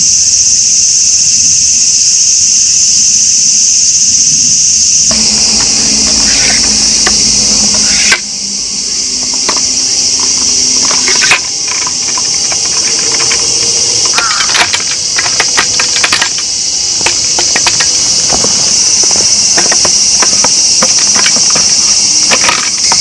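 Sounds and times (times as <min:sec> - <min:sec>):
insects chorus: 0:00.0 - 0:23.0
clicks and knocks of handled objects: 0:09.2 - 0:23.0.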